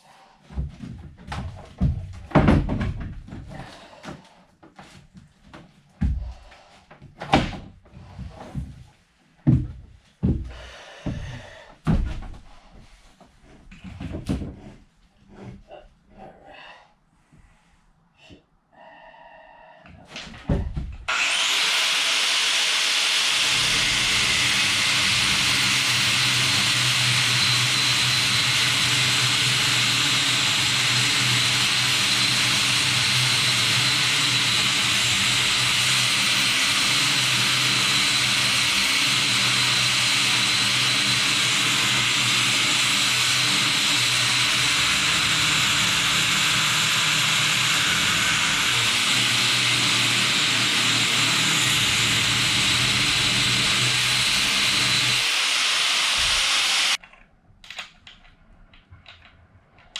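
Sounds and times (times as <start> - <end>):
power tool whining: 21.1 - 57.0.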